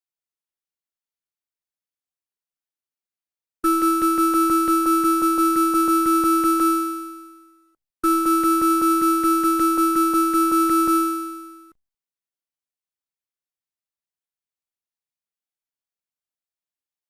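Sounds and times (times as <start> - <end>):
rapid ringing alarm tone: 3.7 - 11.7.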